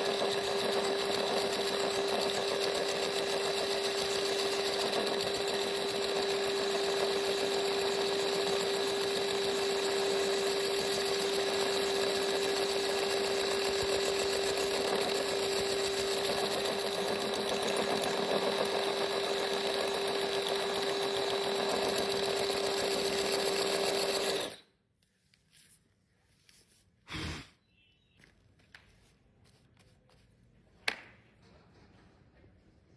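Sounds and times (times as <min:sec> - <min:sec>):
power tool humming: 0:00.0 - 0:24.6.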